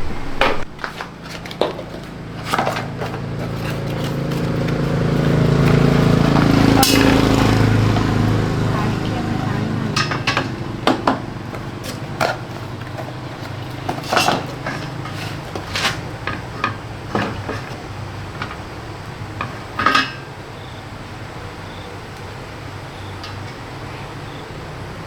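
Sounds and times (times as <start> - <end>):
steady low hum: 0.0 - 25.0
metal tools clinking: 0.9 - 18.7, 19.4 - 20.3.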